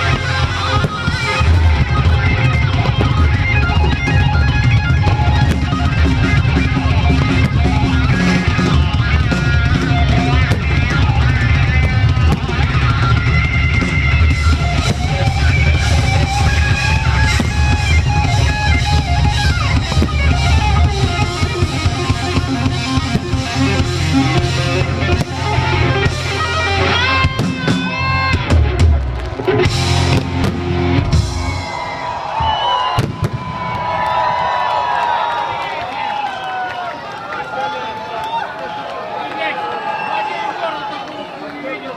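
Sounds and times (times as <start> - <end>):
rock music with drums and guitar: 0.0 - 33.1.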